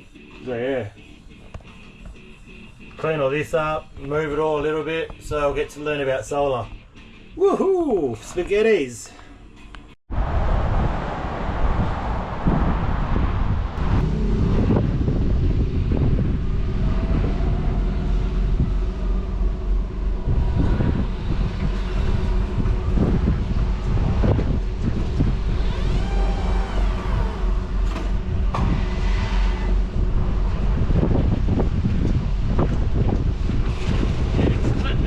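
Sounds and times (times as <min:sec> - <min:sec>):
faint engine hum: 0:09.2 - 0:35.0
vehicle low rumble: 0:09.2 - 0:35.0.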